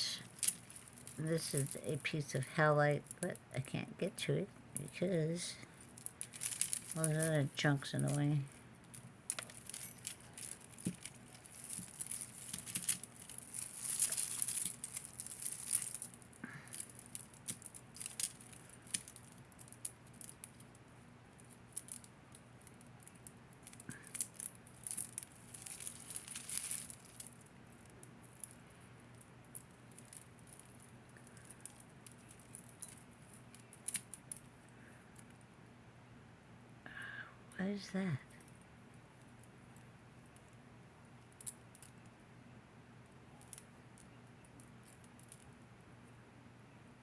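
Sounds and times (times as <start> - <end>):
metal jewelry clinking and rattling: 0.0 - 3.2, 4.8 - 34.6
crinkling: 0.0 - 35.4.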